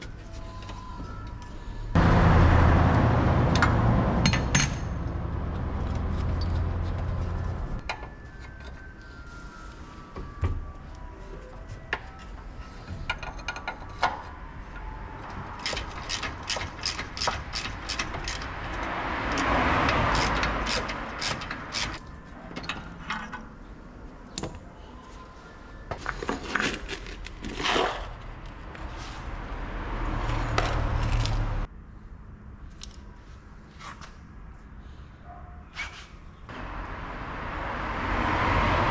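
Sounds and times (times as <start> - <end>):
hand tools clicking and clattering: 15.6 - 23.4.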